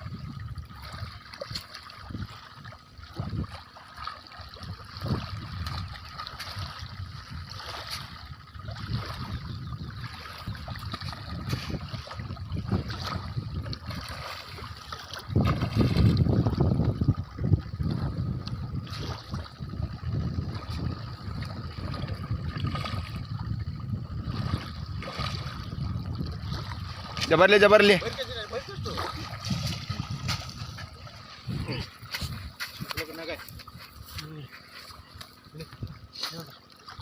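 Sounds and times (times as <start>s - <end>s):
water lapping against boat: 0.0s - 37.0s
low rumble: 15.4s - 27.3s, 28.5s - 32.6s.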